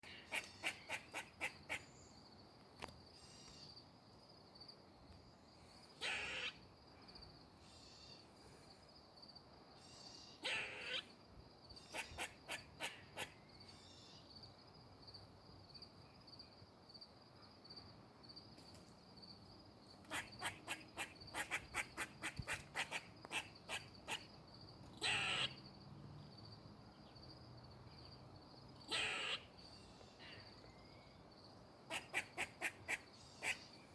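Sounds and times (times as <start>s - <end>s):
squirrel harsh drawn-out calls: 0.0s - 1.9s, 6.0s - 6.6s, 9.8s - 11.1s, 11.7s - 14.1s, 20.1s - 24.3s, 25.0s - 25.6s, 28.8s - 29.6s, 31.9s - 33.7s
squirrel alarm barks: 0.3s - 1.8s, 6.0s - 6.6s, 10.4s - 11.1s, 11.8s - 13.4s, 20.1s - 24.3s, 25.0s - 25.6s, 28.9s - 29.5s, 31.9s - 33.7s.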